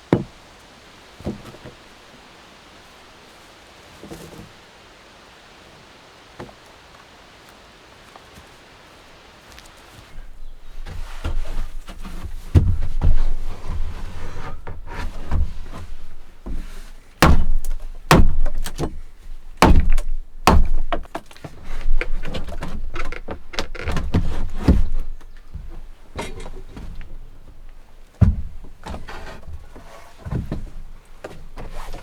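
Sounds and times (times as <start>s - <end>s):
wood thunking and cracking: 0.1s - 0.4s, 1.2s - 1.8s, 10.4s - 32.0s.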